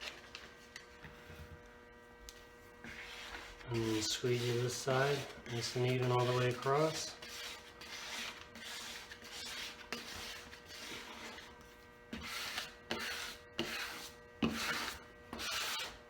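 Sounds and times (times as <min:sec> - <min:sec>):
squeegee rubbing on paper tape: 0:02.8 - 0:11.5, 0:12.1 - 0:16.0.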